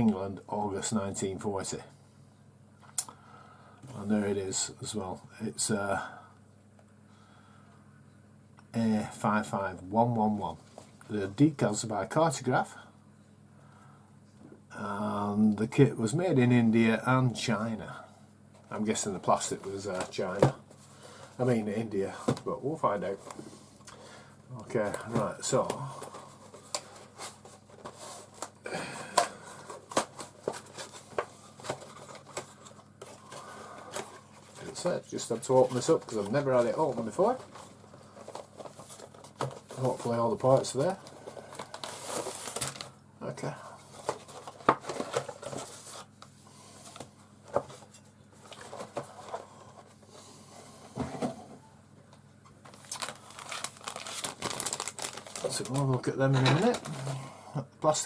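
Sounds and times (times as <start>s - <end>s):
plastic bags rustling: 24.6s - 43.0s, 52.6s - 57.3s.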